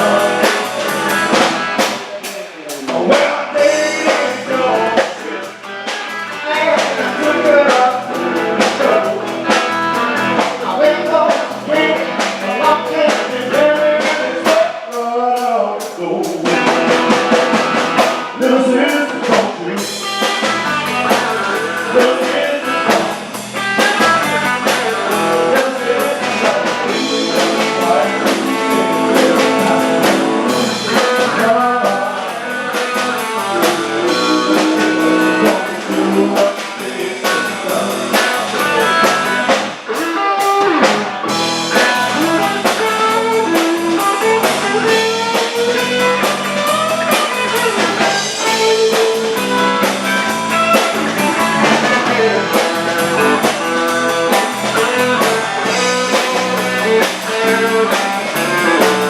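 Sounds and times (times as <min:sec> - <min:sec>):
electric guitar melody: 0:00.0 - 0:02.0, 0:03.4 - 0:14.4, 0:16.4 - 0:59.0
drum kit beat: 0:00.0 - 0:59.0
rock band playing: 0:00.0 - 0:59.0.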